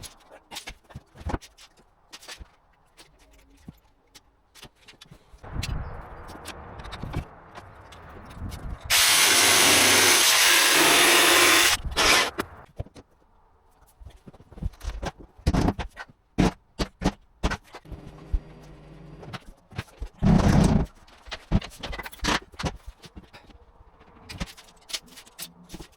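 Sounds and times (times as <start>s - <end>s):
power saw cutting floorboard: 8.9s - 12.4s.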